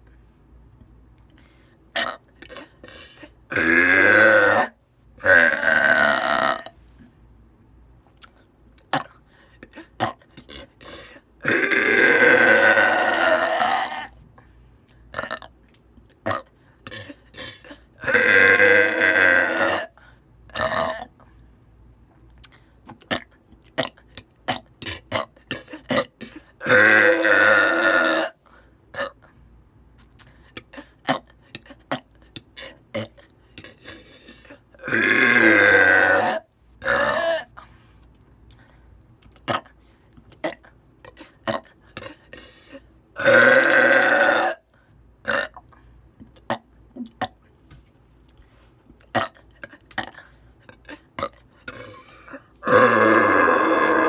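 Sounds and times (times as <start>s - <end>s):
woman belching: 3.5s - 6.7s, 11.4s - 14.1s, 18.0s - 19.9s, 20.6s - 21.1s, 25.9s - 28.4s, 34.8s - 37.5s, 43.2s - 44.6s, 51.2s - 54.0s.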